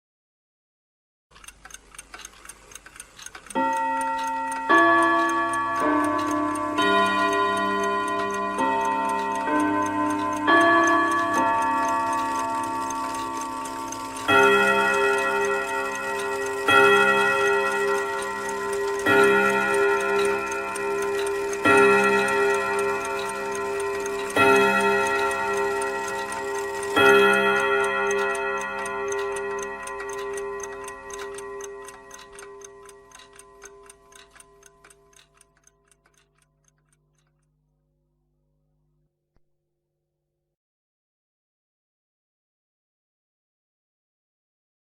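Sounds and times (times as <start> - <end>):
clock ticking: 1.3 - 37.7
wall clock chime striking: 3.5 - 35.2.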